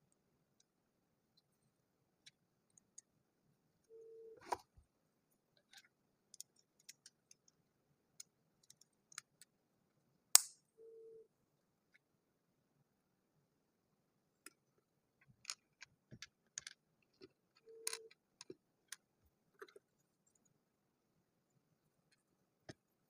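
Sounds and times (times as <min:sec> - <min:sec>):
plastic building blocks clicking: 0:15.2 - 0:19.0.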